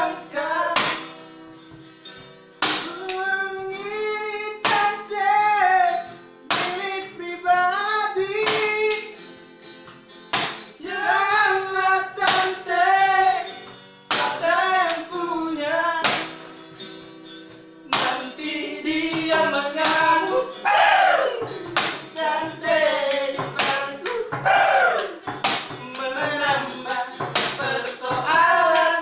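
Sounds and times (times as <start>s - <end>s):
sharp percussive hit: 10.3s - 10.7s, 25.3s - 25.9s, 27.2s - 27.6s.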